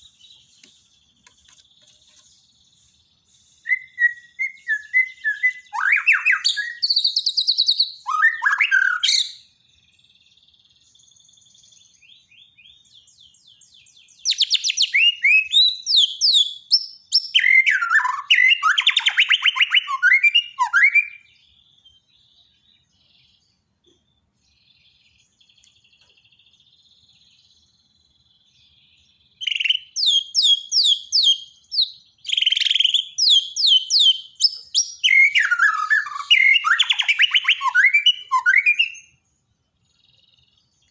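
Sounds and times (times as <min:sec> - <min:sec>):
faint bird twittering: 0:00.0 - 0:40.9
bird whistling and chattering: 0:03.6 - 0:09.4, 0:14.3 - 0:21.3, 0:29.4 - 0:39.1.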